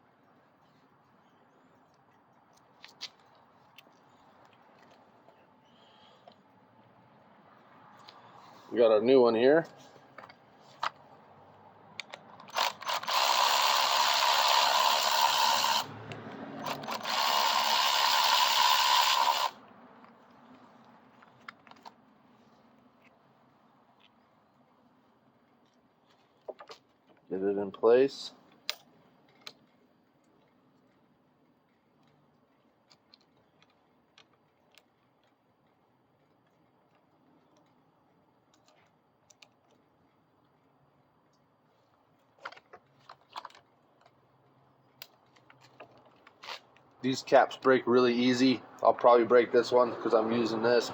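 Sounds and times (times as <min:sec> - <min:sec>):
small parts and tools clicking: 0:12.0 - 0:20.3, 0:28.4 - 0:41.5, 0:42.1 - 0:47.0
power tool running: 0:12.5 - 0:15.9, 0:16.6 - 0:19.6.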